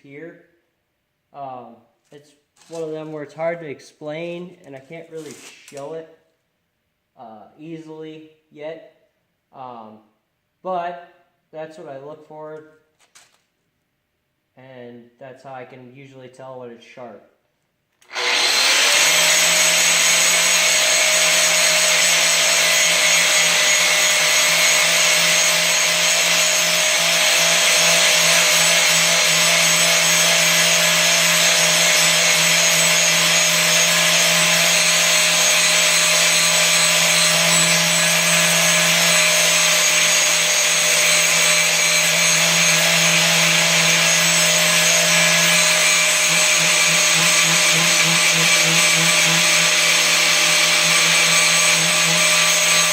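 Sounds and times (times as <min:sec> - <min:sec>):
angle grinder grinding steel: 0:18.0 - 0:52.9.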